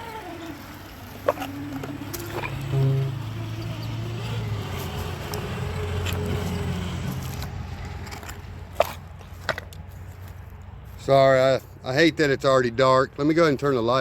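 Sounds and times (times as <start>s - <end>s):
electric motor and gears running: 0.0s - 10.4s.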